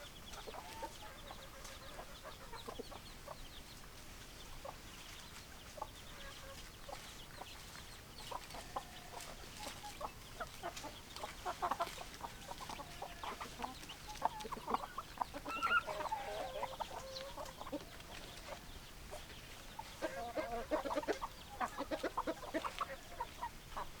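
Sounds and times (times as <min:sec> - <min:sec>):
chickens clucking: 0:00.0 - 0:24.0
chicken wavering cackle: 0:05.8 - 0:24.0.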